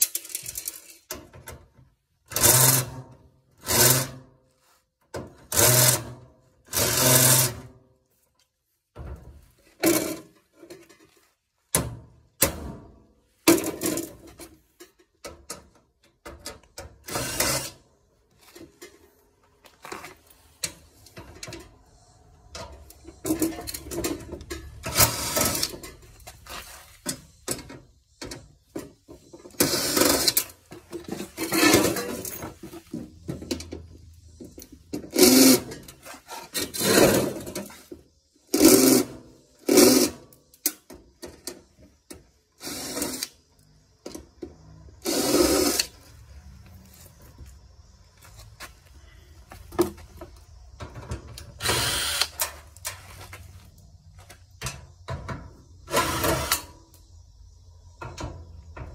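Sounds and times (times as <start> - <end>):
hand tools clanking on metal: 22.4 - 33.9
rasping grinding bursts: 51.6 - 52.3.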